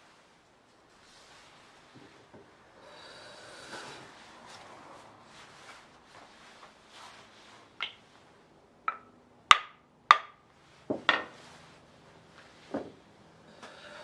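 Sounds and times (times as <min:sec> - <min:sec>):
hammer tapping plane: 0:08.9 - 0:11.4.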